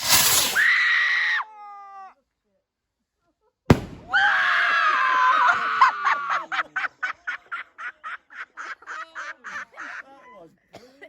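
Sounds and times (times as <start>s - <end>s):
firework bang: 0.0s - 0.6s, 3.7s - 4.3s.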